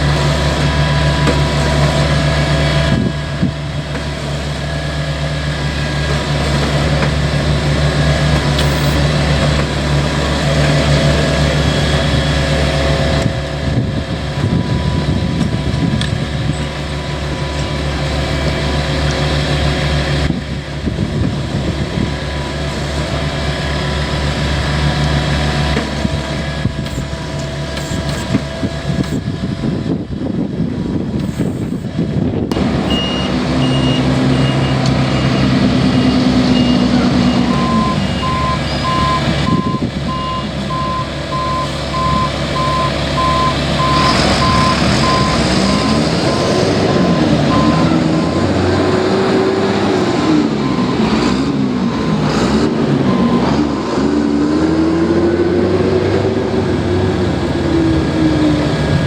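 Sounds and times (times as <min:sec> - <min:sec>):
heavy equipment engine rumble: 0:00.0 - 0:59.0
high-pitched reversing beeper: 0:08.6 - 0:09.0
low-pitched reversing beeper: 0:08.6 - 0:09.1, 0:09.8 - 0:18.7, 0:32.8 - 0:55.6.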